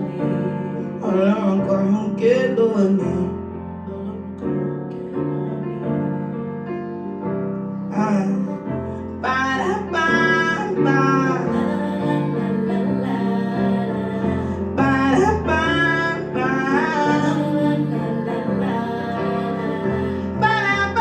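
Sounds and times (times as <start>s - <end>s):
woman singing: 0.0s - 1.2s, 3.9s - 6.5s, 11.2s - 21.0s
keyboard chords over bass: 0.0s - 21.0s.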